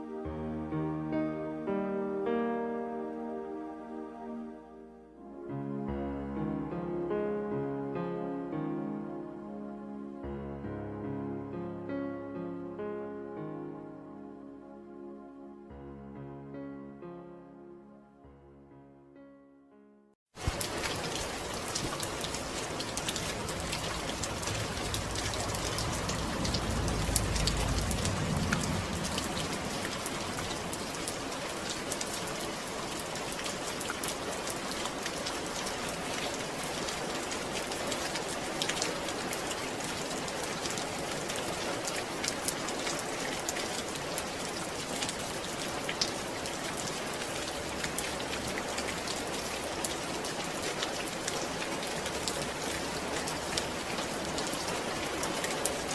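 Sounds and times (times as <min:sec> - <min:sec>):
steady rain falling: 0:20.3 - 0:55.9
low rumble: 0:23.6 - 0:30.6.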